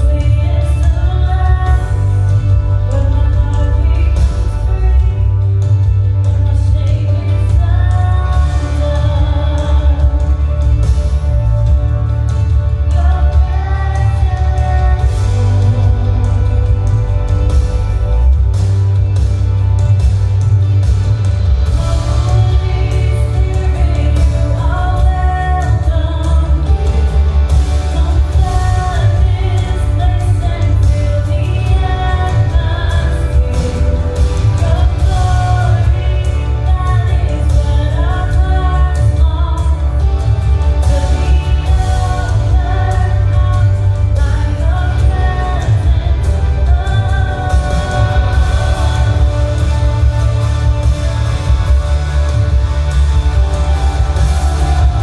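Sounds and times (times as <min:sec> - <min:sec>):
instrumental backing with heavy bass: 0:00.0 - 0:55.0
worship song singing: 0:00.0 - 0:55.0.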